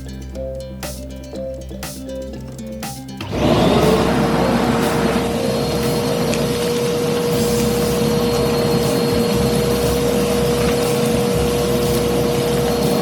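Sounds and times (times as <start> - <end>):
vacuum cleaner running: 3.2 - 13.0.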